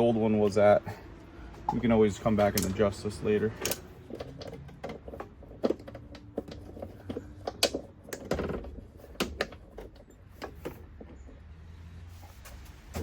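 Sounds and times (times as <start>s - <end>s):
small metal clicks and knocks: 1.5s - 11.6s.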